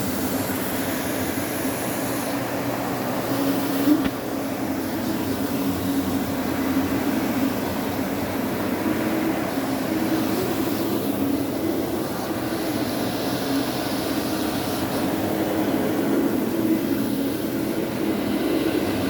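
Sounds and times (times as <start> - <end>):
carpet cleaning machine running: 0.0 - 19.0.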